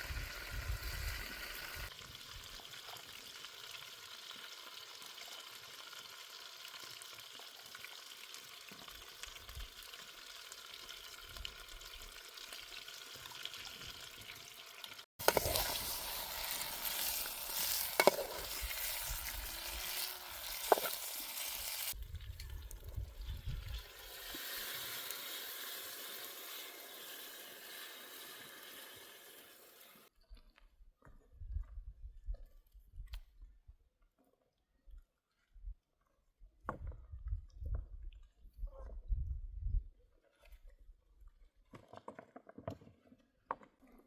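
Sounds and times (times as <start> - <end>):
food sizzling in a pan: 0.0 - 30.1.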